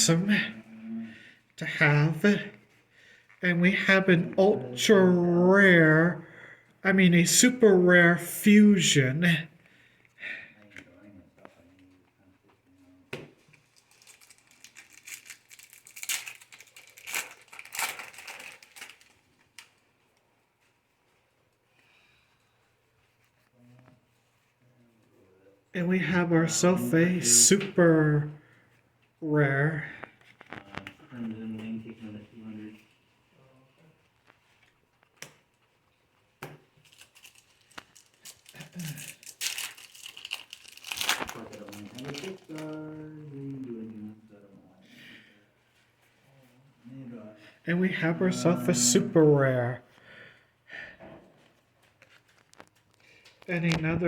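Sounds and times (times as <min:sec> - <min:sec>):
foil wrapper crinkling: 0:13.5 - 0:19.8, 0:36.8 - 0:42.8.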